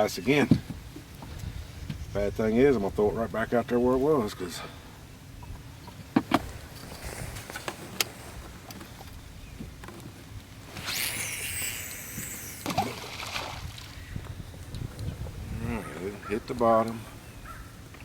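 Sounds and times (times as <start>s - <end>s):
fishing line hissing off spool: 10.6s - 14.2s.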